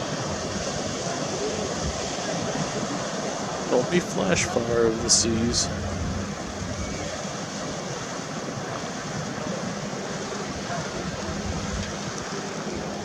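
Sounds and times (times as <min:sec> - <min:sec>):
water rushing: 0:00.0 - 0:13.0
wind: 0:00.0 - 0:13.0
faint low hum: 0:04.3 - 0:07.2.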